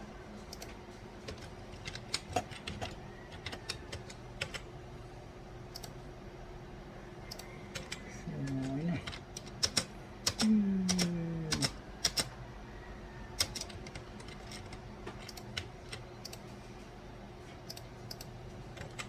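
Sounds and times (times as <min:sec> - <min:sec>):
computer keyboard clicks: 0:00.5 - 0:04.6, 0:05.7 - 0:06.0, 0:07.3 - 0:12.3, 0:13.4 - 0:16.4, 0:17.6 - 0:19.0
person's falling vocal sound: 0:10.4 - 0:11.7.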